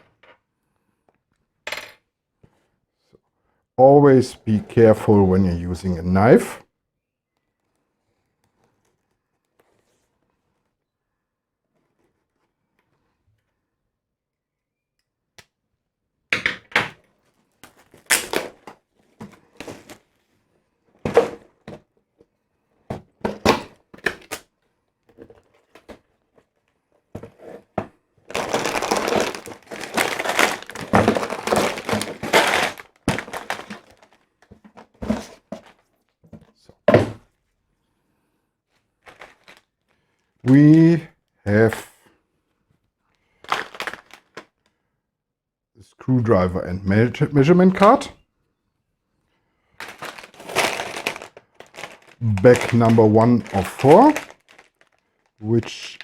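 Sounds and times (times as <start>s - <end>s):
packaging rustling: 17.2s - 20.4s, 25.1s - 36.0s, 39.0s - 39.9s, 43.4s - 44.6s, 49.8s - 56.0s
cardboard thumps and knocks: 21.0s - 21.8s, 22.9s - 24.2s, 27.2s - 35.8s, 36.9s - 37.2s.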